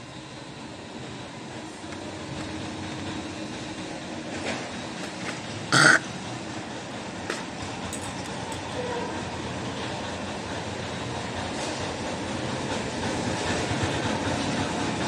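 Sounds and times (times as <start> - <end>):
person gagging: 5.8 - 6.0.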